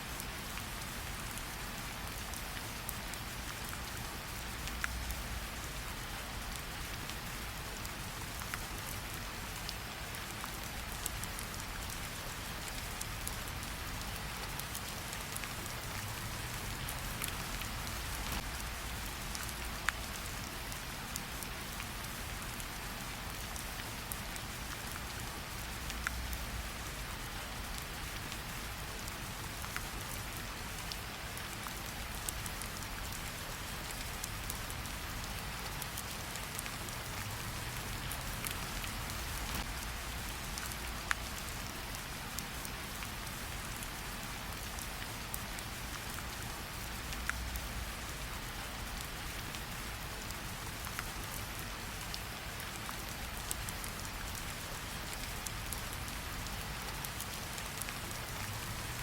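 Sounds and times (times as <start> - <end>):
rain falling: 0.0 - 59.0.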